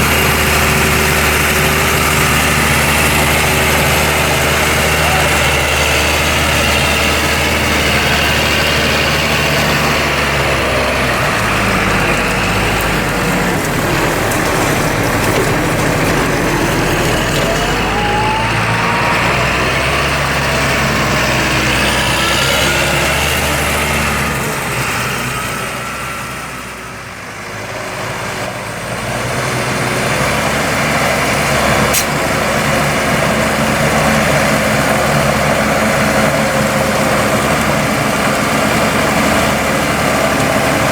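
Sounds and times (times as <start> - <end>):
rising whines: 0.0 - 26.6
diesel tractor engines running: 0.0 - 40.9.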